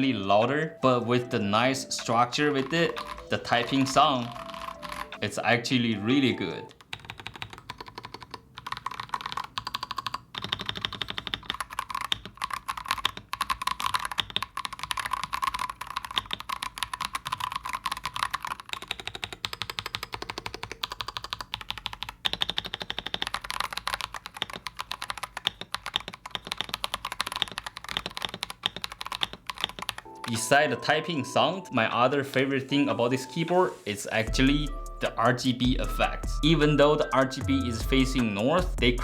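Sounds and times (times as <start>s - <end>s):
mechanical keyboard typing: 1.4s - 5.3s, 6.2s - 30.8s.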